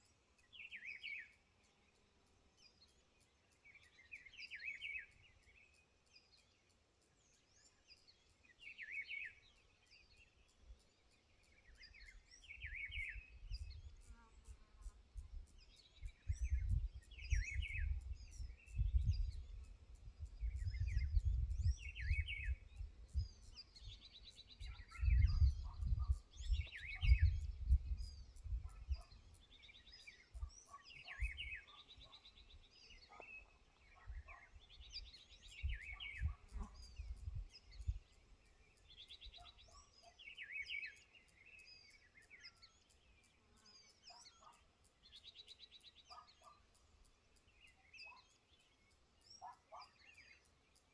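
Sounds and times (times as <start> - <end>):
birds chirping and trilling: 0.3 - 50.9
wind buffeting microphone: 12.6 - 14.1, 15.2 - 29.4, 31.2 - 31.6, 34.1 - 38.2.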